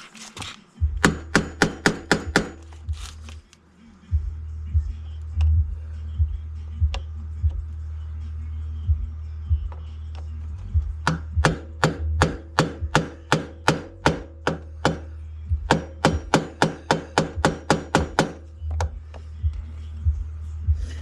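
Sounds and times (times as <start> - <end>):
hammer striking steel chisel: 1.0 - 2.7, 11.0 - 15.1, 15.7 - 18.9.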